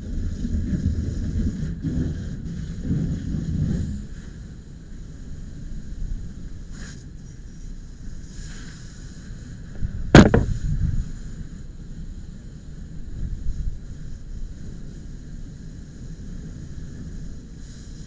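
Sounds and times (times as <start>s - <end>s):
sharp bang: 10.2s - 10.5s.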